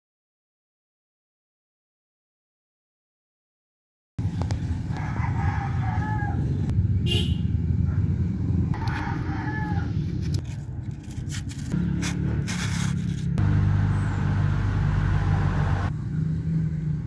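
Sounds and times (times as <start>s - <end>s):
rooster crowing: 4.9s - 6.6s, 8.7s - 10.2s.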